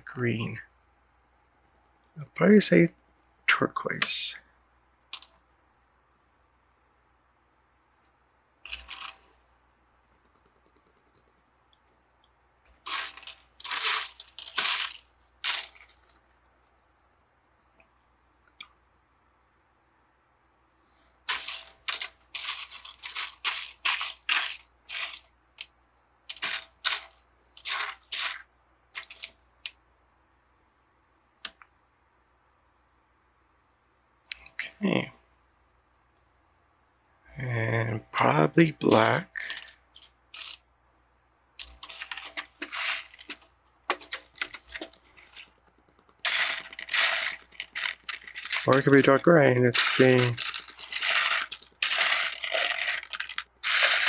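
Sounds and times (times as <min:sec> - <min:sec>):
plastic pieces clattering and clicking: 0:05.1 - 0:05.4, 0:08.7 - 0:09.3, 0:12.7 - 0:16.7, 0:21.3 - 0:25.7, 0:26.3 - 0:28.4, 0:29.0 - 0:29.4, 0:38.9 - 0:40.6, 0:41.6 - 0:54.0.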